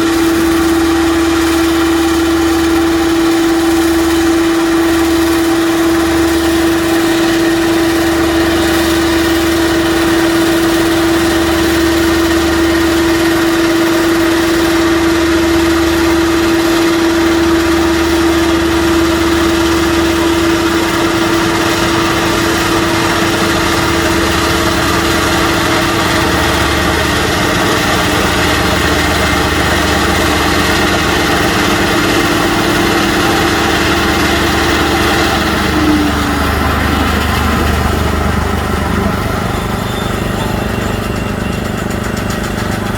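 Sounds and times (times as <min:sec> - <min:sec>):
engine humming: 0:17.7 - 0:42.9.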